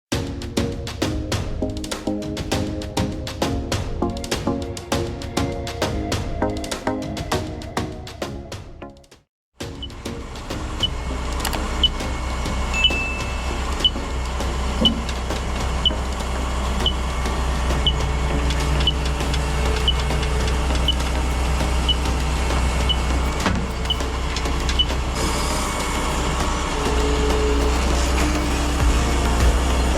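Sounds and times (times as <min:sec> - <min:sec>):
excavator diesel engine droning: 0:09.9 - 0:29.9
warning beeper chirping: 0:12.8 - 0:14.0.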